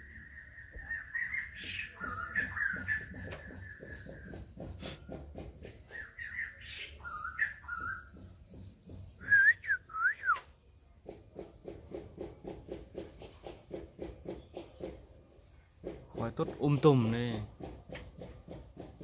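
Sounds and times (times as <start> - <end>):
whistled bird notes: 0.0 - 4.3, 5.8 - 10.5
birds chirping: 0.0 - 10.4.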